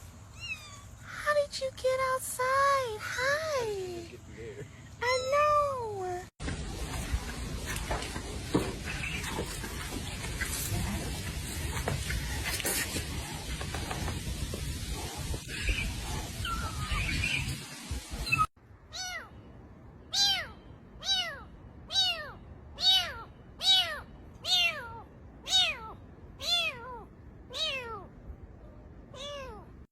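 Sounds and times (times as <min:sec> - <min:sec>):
kitten meowing: 0:00.3 - 0:01.0, 0:18.9 - 0:19.3, 0:20.1 - 0:28.1, 0:29.2 - 0:29.7
rumbling noise: 0:06.4 - 0:18.5.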